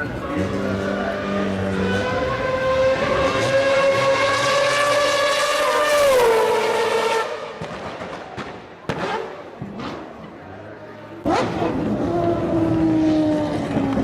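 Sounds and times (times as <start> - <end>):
motorbike engine passing at high revs: 0.3 - 7.6, 11.2 - 14.0.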